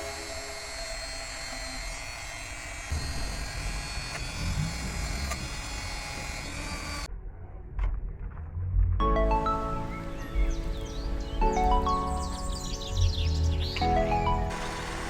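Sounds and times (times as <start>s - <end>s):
small motor whirring: 0.0s - 7.1s, 14.5s - 15.0s.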